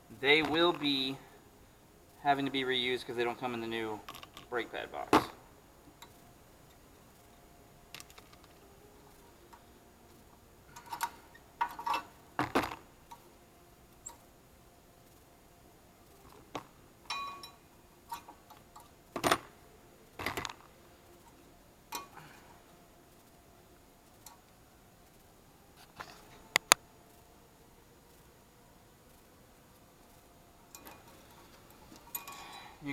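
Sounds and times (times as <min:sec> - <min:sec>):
metal clicks and clinks: 0:17.1 - 0:19.4, 0:30.7 - 0:31.2, 0:32.0 - 0:32.7.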